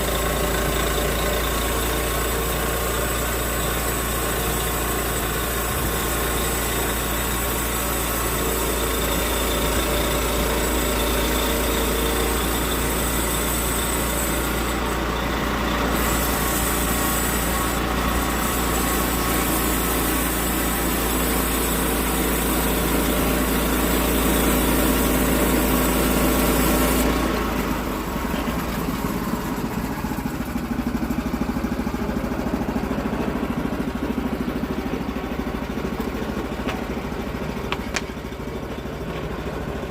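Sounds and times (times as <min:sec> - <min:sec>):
band sawmill cutting log: 0:00.0 - 0:39.9.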